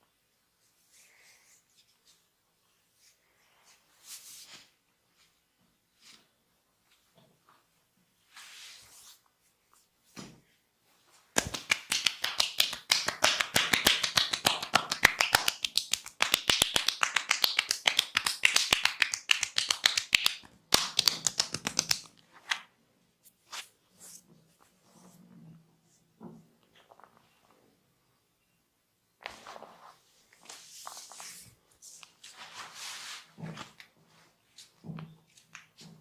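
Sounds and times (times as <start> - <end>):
hands slapping in massage: 11.4 - 22.7.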